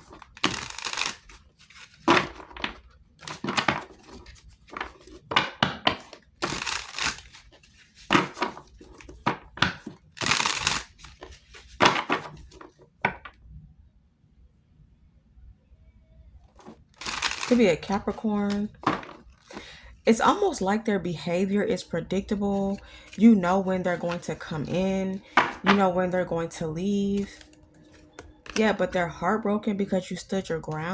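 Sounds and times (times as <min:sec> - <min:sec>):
cards being shuffled: 0:00.0 - 0:12.8, 0:16.6 - 0:19.7, 0:22.3 - 0:25.9, 0:27.0 - 0:28.8.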